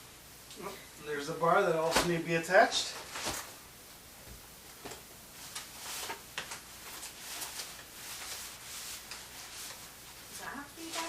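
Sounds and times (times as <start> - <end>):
rustling: 1.8 - 3.6, 4.8 - 11.0.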